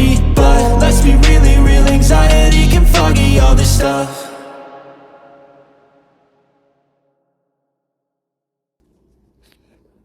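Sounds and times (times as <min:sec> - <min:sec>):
hip-hop song last chord ringing: 0:00.0 - 0:06.4.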